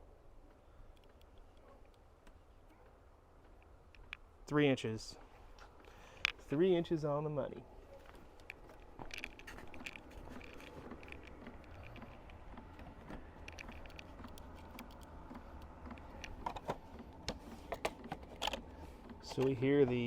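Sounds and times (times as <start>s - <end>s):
heater low hum: 0.0s - 20.0s
light clicks: 0.5s - 4.3s.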